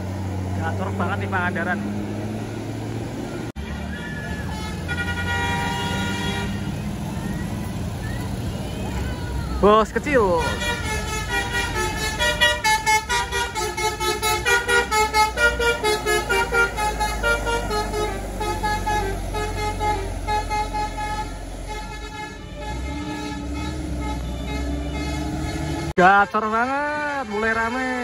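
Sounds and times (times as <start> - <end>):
bus engine running: 0.0 - 28.0
bus horn melody: 4.4 - 7.0, 10.2 - 28.0.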